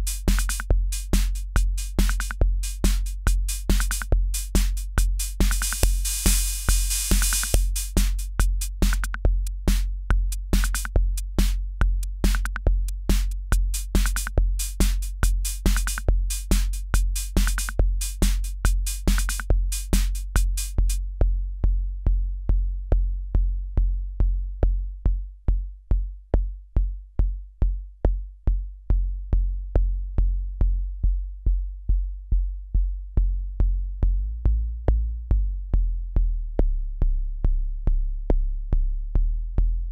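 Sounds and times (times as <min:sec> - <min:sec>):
drum machine hi-hat and snare: 0:00.0 - 0:21.3
drum machine kick drum: 0:00.0 - 0:39.9.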